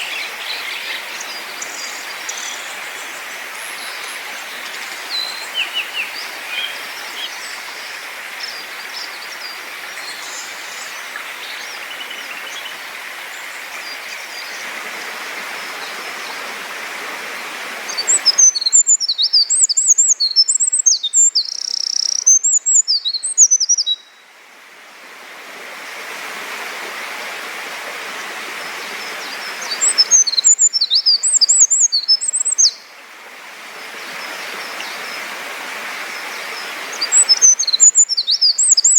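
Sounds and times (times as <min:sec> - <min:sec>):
faint bird chirps: 0:17.9 - 0:24.2, 0:29.3 - 0:32.9, 0:36.9 - 0:38.9
songbird singing rapid high notes: 0:18.0 - 0:24.0, 0:37.1 - 0:38.9.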